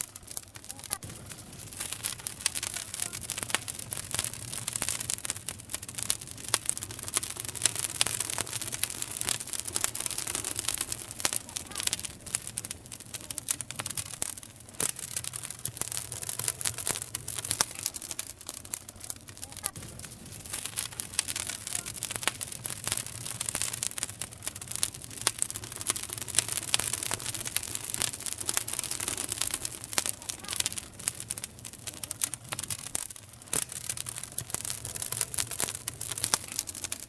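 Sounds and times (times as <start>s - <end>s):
wood fire crackling and popping: 0.0s - 37.0s.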